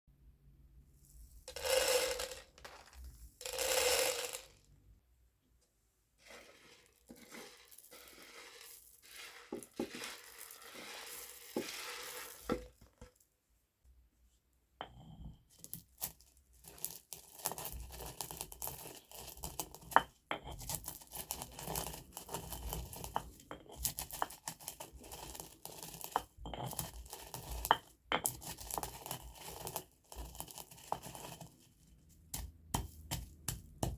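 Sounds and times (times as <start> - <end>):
peppercorns crushed in a mortar: 1.4 - 4.7, 6.2 - 13.2, 14.9 - 33.9.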